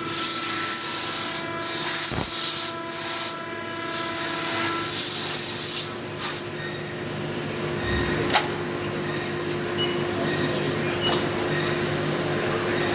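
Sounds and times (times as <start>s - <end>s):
steady mechanical hum: 0.0s - 12.9s.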